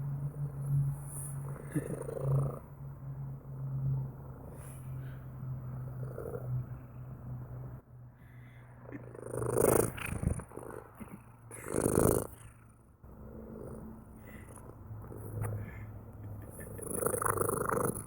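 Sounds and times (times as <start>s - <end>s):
cat purring: 0.9s - 2.8s, 5.8s - 7.2s, 8.8s - 18.0s.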